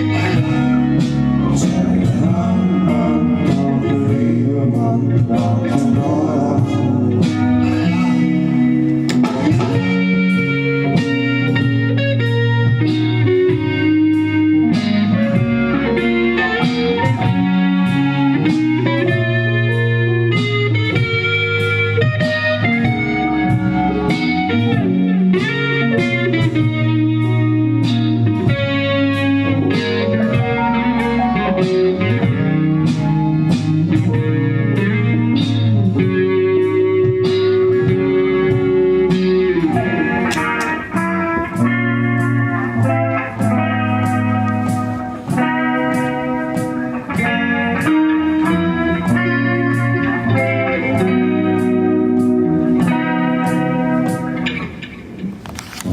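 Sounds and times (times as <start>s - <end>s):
steady drumbeat: 0.0s - 19.4s
bass: 0.0s - 55.9s
electric guitar: 0.0s - 55.9s.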